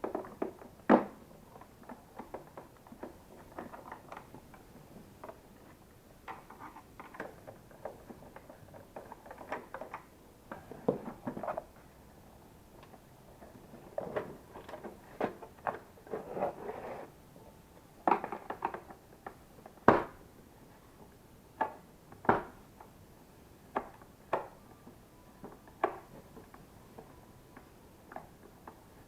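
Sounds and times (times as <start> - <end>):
plastic parts clicking and knocking: 6.2 - 11.6, 18.0 - 20.1.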